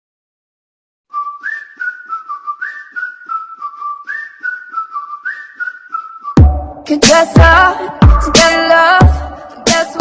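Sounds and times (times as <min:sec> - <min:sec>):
whistled melody: 0:01.1 - 0:06.8
steady beat: 0:06.4 - 0:10.0.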